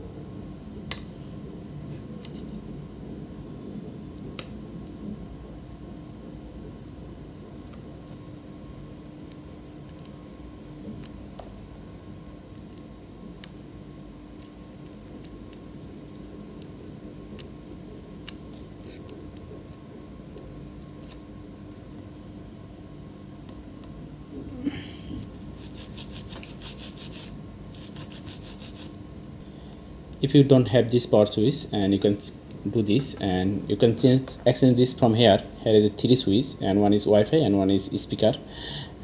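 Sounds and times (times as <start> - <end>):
low steady hum: 0.0 - 39.0
rapid rubbing strokes: 25.4 - 29.0.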